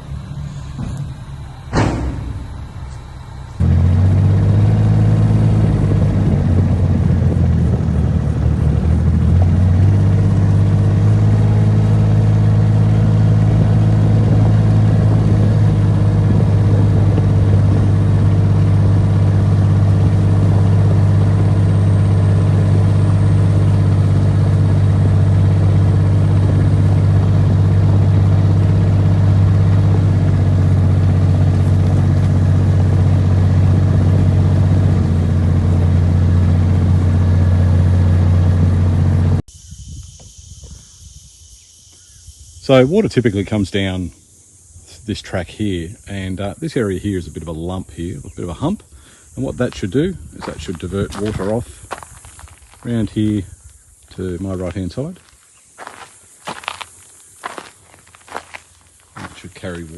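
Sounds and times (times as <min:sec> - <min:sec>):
large engine running: 0:00.0 - 0:39.4, 0:45.7 - 0:59.9.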